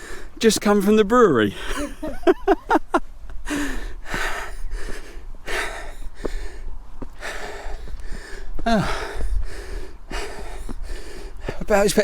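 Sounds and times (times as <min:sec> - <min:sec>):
person panting heavily: 0:00.0 - 0:00.4, 0:03.4 - 0:11.7.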